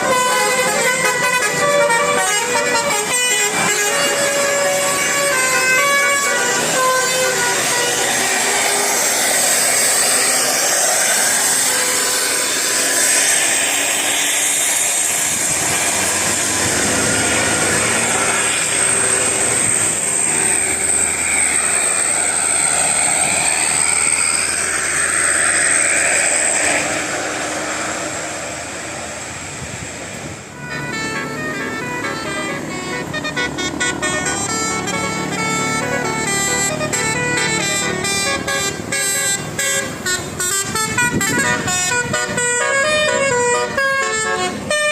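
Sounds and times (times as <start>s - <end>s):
bus driving past: 0.0s - 44.9s.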